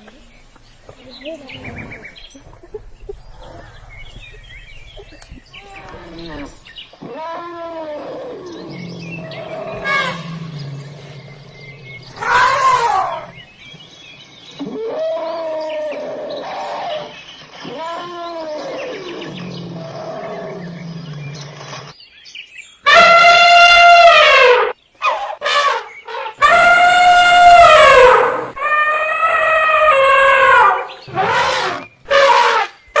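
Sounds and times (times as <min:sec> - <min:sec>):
elephant low rumble: 0:00.1 - 0:06.8, 0:07.6 - 0:13.5
elephant trumpet blasts: 0:22.9 - 0:24.7, 0:30.7 - 0:33.0
elephant rising and falling calls: 0:26.4 - 0:32.6.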